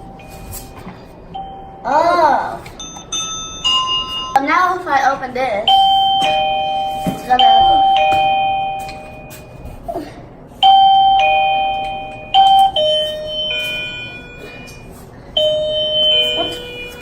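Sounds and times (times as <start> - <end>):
electronic door chime ding-dong: 1.4 - 1.9, 2.8 - 4.5, 5.7 - 9.5, 10.6 - 17.0.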